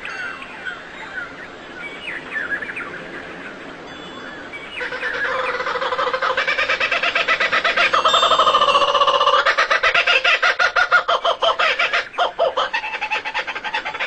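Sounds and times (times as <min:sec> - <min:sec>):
rapidly pulsing bird call: 0:04.4 - 0:14.0
small birds chirping: 0:06.8 - 0:10.3.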